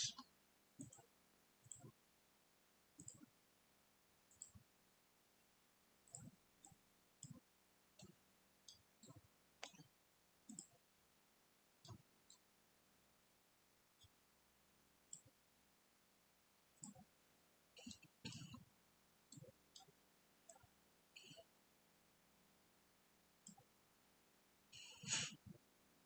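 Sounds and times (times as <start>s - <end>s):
computer mouse clicks: 0.0s - 2.0s, 3.0s - 3.3s, 4.3s - 4.7s, 6.1s - 9.9s, 10.5s - 10.8s, 11.8s - 12.4s, 16.8s - 17.1s, 17.8s - 18.7s, 19.3s - 21.5s, 23.4s - 23.7s, 24.8s - 25.6s.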